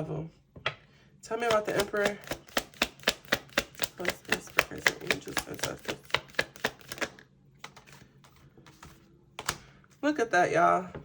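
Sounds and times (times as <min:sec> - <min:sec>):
cards being shuffled: 0:01.4 - 0:09.8.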